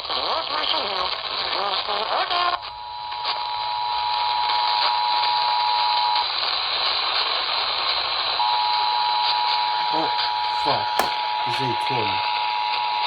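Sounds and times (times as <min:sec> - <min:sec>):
radio static hiss: 0:00.0 - 0:02.6, 0:09.8 - 0:12.2
voice on radio: 0:09.9 - 0:12.2.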